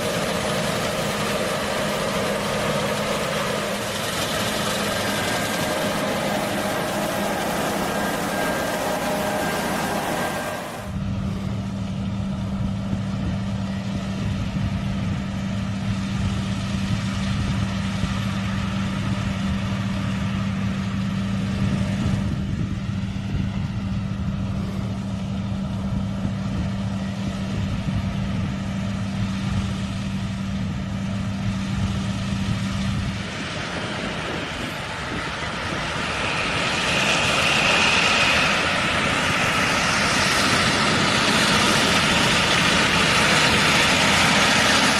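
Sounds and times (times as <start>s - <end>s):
high whine: 0.0s - 13.9s
combine harvester engine hum: 0.0s - 44.9s.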